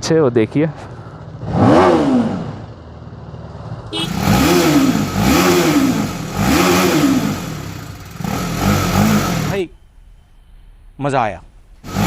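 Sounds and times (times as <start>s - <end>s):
motorcycle engine revving in tunnel: 1.0s - 9.6s.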